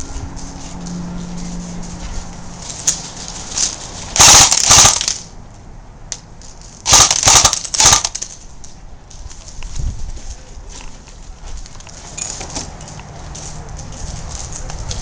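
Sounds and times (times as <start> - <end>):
airsoft gun rapid shots: 4.2 - 5.2, 6.8 - 8.2.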